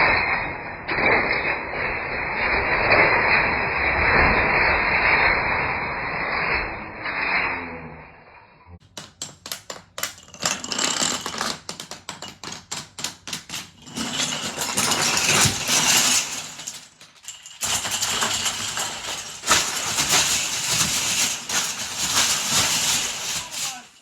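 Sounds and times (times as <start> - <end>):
wooden planks clattering: 8.8 - 24.0.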